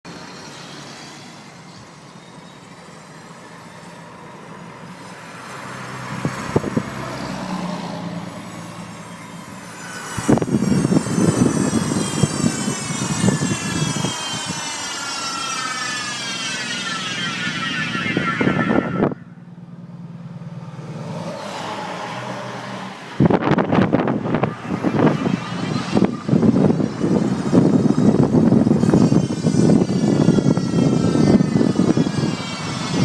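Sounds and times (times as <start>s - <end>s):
road and drive rumble: 0.1s - 33.0s
drive unit whining: 8.5s - 20.4s, 23.2s - 33.0s.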